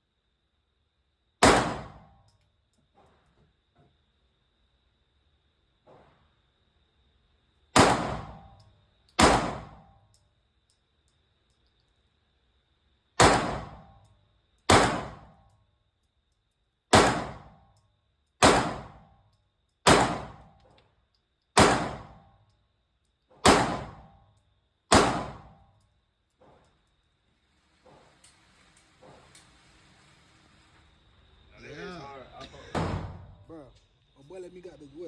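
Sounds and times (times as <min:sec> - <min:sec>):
pistol shots with echo: 0:01.4 - 0:02.1, 0:07.8 - 0:08.6, 0:09.2 - 0:09.9, 0:13.2 - 0:13.9, 0:14.7 - 0:15.4, 0:16.9 - 0:17.6, 0:18.4 - 0:19.1, 0:19.8 - 0:20.5, 0:21.6 - 0:22.2, 0:23.4 - 0:24.1, 0:24.9 - 0:25.6.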